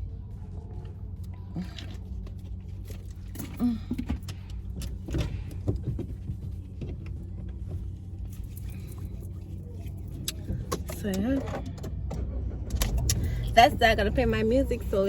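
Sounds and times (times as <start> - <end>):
engine and road hum: 0.0 - 15.0.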